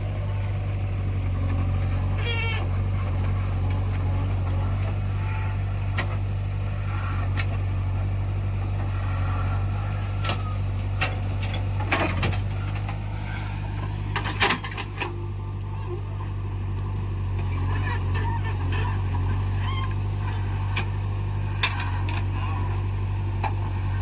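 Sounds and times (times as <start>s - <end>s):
diesel engine humming: 0.0s - 24.0s.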